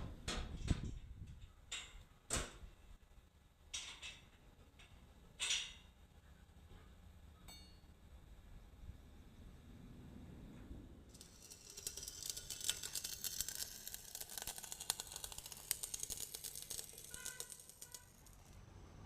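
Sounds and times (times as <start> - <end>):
electric arc welding crackling: 11.1 - 18.6.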